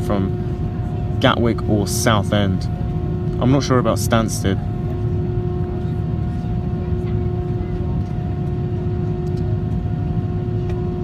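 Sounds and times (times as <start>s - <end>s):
aircraft cabin engine rumble: 0.0s - 11.0s
constant hum tone: 0.0s - 11.0s.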